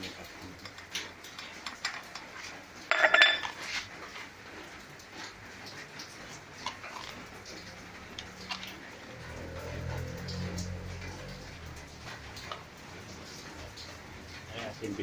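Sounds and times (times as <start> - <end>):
utensils and dishes clinking: 0.0 - 4.0.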